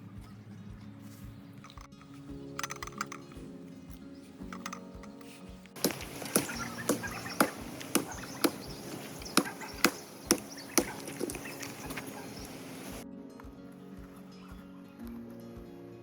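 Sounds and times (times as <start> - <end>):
blade chopping wood: 5.8 - 12.1
outdoor hiss: 5.8 - 13.0.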